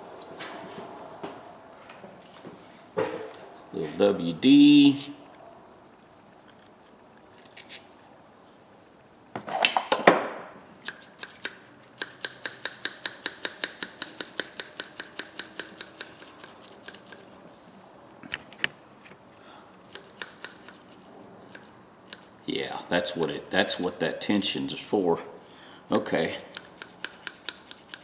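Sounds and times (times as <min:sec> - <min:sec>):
cutters' metal jaws clicking: 0:10.8 - 0:17.3, 0:19.9 - 0:22.4, 0:26.2 - 0:28.0.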